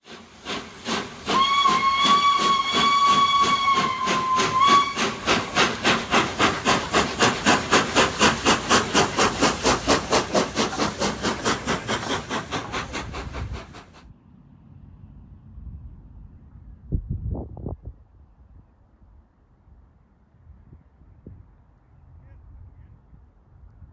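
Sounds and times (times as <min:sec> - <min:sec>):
steady steam hiss: 0:00.0 - 0:14.0
steam locomotive exhaust beats: 0:00.0 - 0:14.0
steam locomotive whistle: 0:00.4 - 0:07.1.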